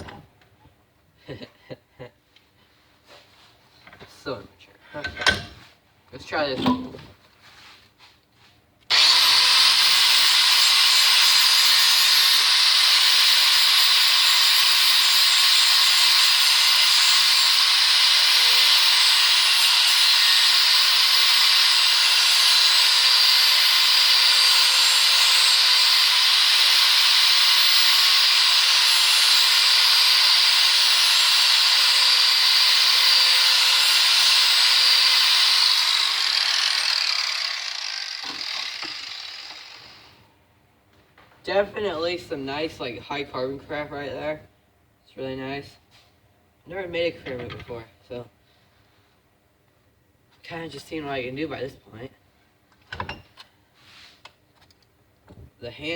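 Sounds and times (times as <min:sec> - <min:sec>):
angle grinder grinding steel: 0:08.9 - 0:40.2.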